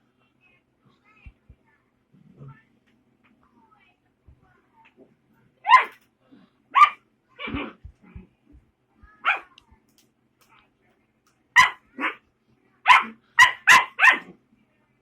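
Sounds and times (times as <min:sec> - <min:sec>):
puppy yapping: 0:05.6 - 0:06.0, 0:06.8 - 0:07.8, 0:09.2 - 0:09.5, 0:11.6 - 0:12.2, 0:12.9 - 0:14.3.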